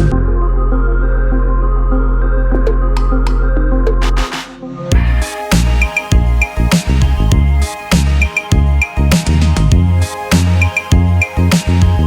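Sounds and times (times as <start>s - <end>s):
electronic music bass line: 0.0s - 12.0s
heavy electronic beats: 2.9s - 12.0s.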